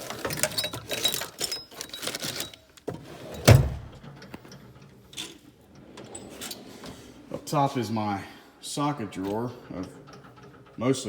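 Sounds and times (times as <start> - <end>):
tool box drawers rattling: 0.0 - 4.4
drawer shutting with heavy thud: 2.9 - 4.1.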